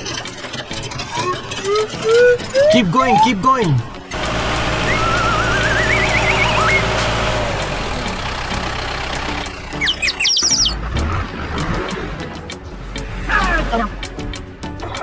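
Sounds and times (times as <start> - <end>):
high squeaky chirps: 0.0 - 15.0
low engine rumble: 0.0 - 15.0
wobbling cartoon whistle: 0.9 - 7.2, 9.7 - 11.8.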